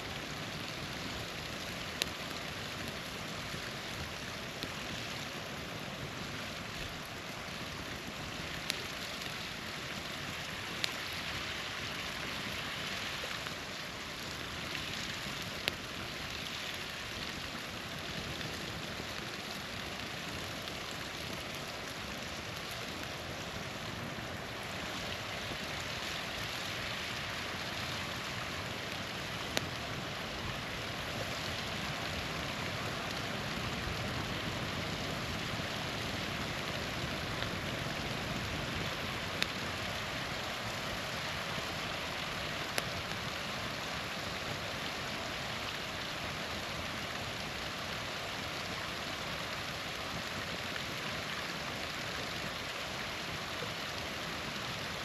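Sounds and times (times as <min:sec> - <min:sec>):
small waterfall rushing: 0:00.0 - 0:55.0
campfire crackling pops: 0:00.5 - 0:04.9, 0:06.0 - 0:11.5, 0:13.2 - 0:16.2, 0:16.8 - 0:44.4.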